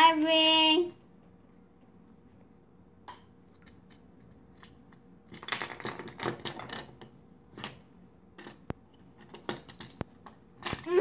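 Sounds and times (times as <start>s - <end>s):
plastic toys clicking and rattling: 3.7s - 7.8s, 8.4s - 11.0s.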